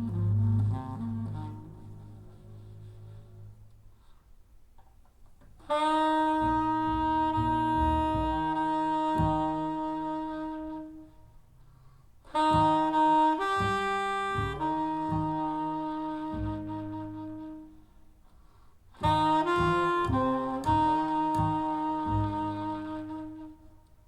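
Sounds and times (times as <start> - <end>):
saxophone long notes: 0.0 - 3.8, 5.6 - 11.4, 12.3 - 18.0, 18.9 - 24.0
slow double bass notes: 0.0 - 3.9, 5.8 - 11.1, 12.3 - 17.7, 19.0 - 23.6.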